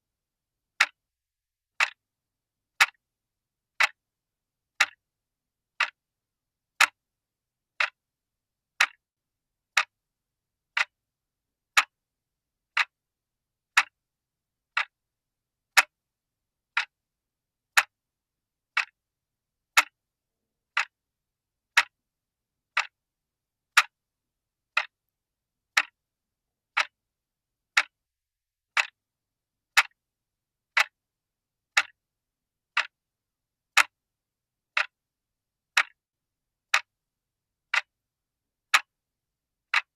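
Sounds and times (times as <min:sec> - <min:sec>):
clock ticking: 0:00.8 - 0:01.0, 0:01.8 - 0:02.0, 0:02.8 - 0:03.0, 0:03.8 - 0:04.0, 0:04.8 - 0:05.0, 0:05.8 - 0:06.0, 0:06.8 - 0:07.0, 0:07.8 - 0:08.0, 0:08.7 - 0:09.0, 0:09.7 - 0:10.0, 0:10.7 - 0:11.0, 0:11.7 - 0:12.0, 0:12.7 - 0:13.0, 0:13.7 - 0:14.0, 0:14.7 - 0:15.0, 0:15.7 - 0:16.0, 0:16.7 - 0:17.0, 0:17.7 - 0:18.0, 0:18.7 - 0:19.0, 0:19.7 - 0:20.0, 0:20.7 - 0:21.0, 0:21.7 - 0:22.0, 0:22.7 - 0:23.0, 0:23.7 - 0:24.0, 0:24.7 - 0:25.0, 0:25.7 - 0:26.0, 0:26.7 - 0:27.0, 0:27.7 - 0:28.0, 0:28.7 - 0:29.0, 0:29.7 - 0:30.0, 0:30.7 - 0:31.0, 0:31.7 - 0:32.0, 0:32.7 - 0:33.0, 0:33.7 - 0:34.0, 0:34.7 - 0:35.0, 0:35.7 - 0:36.0, 0:36.7 - 0:36.9, 0:37.7 - 0:37.9, 0:38.7 - 0:39.0, 0:39.7 - 0:39.9.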